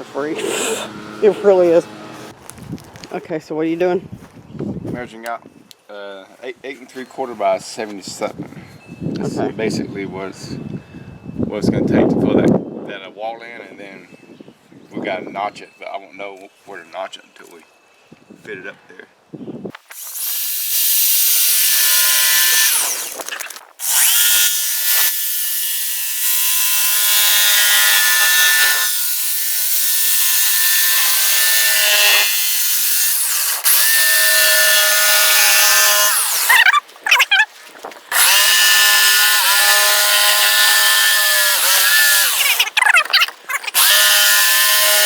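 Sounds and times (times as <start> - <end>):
electric saw cutting plywood: 0.0 - 2.4, 19.9 - 36.6, 38.1 - 45.0.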